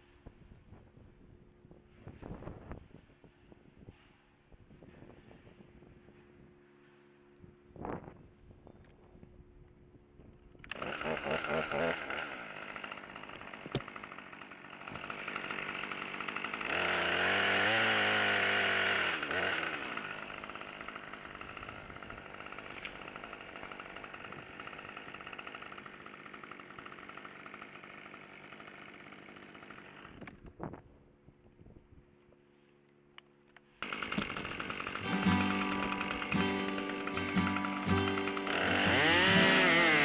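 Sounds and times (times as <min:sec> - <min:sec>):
chainsaw running and revving: 0:10.6 - 0:30.4, 0:33.8 - 0:40.0.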